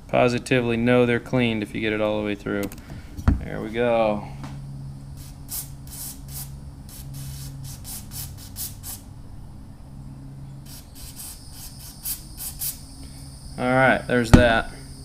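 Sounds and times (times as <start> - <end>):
aerosol spray hissing: 5.2 - 9.0, 10.6 - 12.9.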